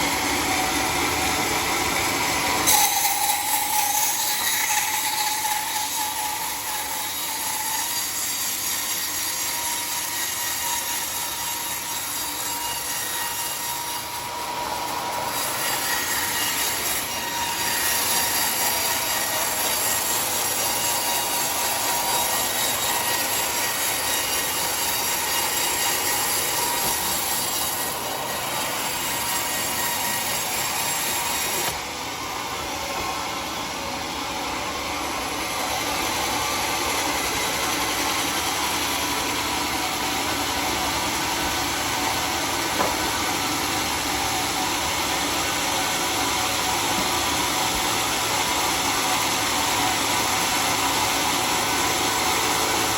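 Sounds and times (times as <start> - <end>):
saw cutting through log: 0.0 - 52.9.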